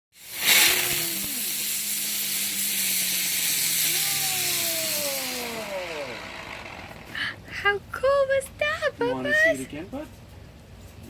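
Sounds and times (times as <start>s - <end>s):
firework hissing: 0.1s - 7.2s.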